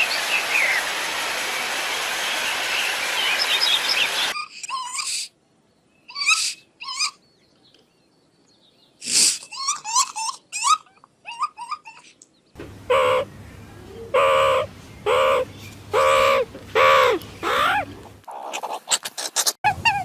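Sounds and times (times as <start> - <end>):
bird calling: 12.8 - 20.0.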